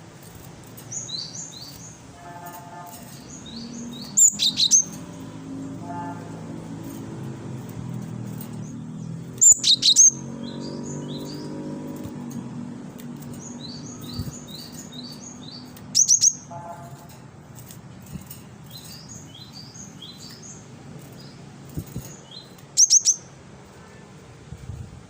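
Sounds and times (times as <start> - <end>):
bird singing high notes: 0.9 - 6.2, 8.3 - 11.6, 13.2 - 17.1, 18.2 - 23.3.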